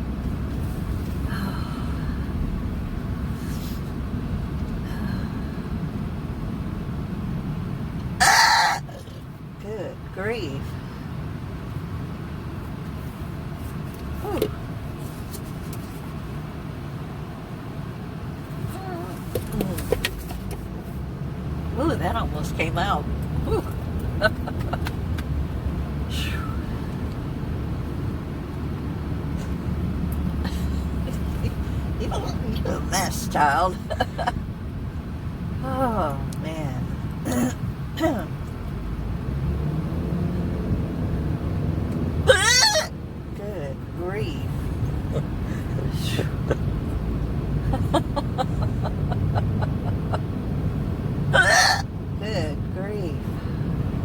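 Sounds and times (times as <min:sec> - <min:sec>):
car road and engine rumble: 0:00.0 - 0:54.0
high-pitched hiccup: 0:08.2 - 0:09.2.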